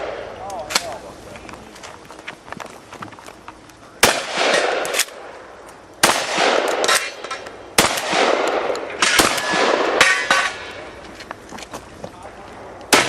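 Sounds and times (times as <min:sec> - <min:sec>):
shotgun shots: 0:04.0 - 0:05.3, 0:06.0 - 0:10.8.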